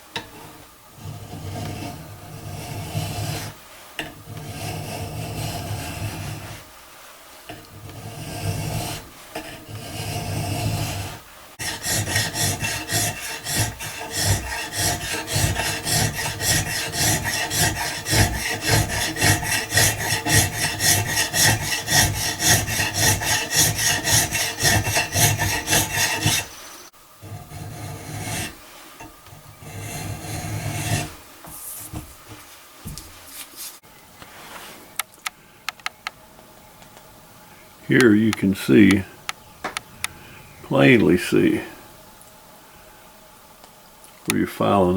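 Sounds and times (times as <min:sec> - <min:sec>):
steel file rasping on metal: 0:00.2 - 0:03.6, 0:04.2 - 0:06.7, 0:07.7 - 0:32.0.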